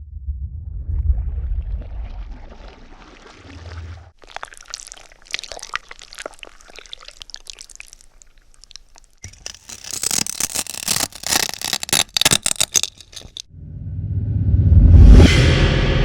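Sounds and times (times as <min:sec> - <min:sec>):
clicking and crackling: 0:09.2 - 0:13.4.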